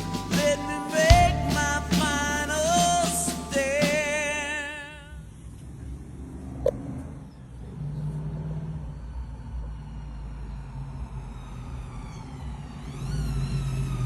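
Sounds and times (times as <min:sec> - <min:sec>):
rock song with man singing: 0:00.0 - 0:05.1
car engine idling: 0:00.0 - 0:05.4.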